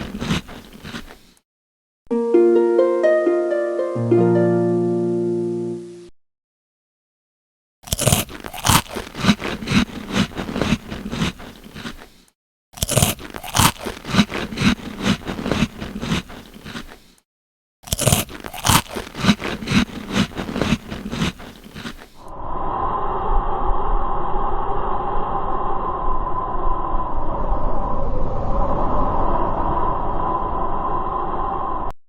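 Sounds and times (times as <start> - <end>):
crunching and scraping strokes: 0.0 - 1.4, 7.8 - 17.2, 17.8 - 22.3.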